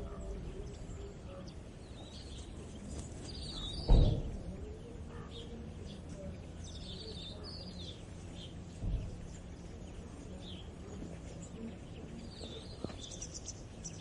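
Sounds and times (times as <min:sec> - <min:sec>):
songbirds chirping and trilling: 0:00.0 - 0:14.0
low thump: 0:03.8 - 0:04.6.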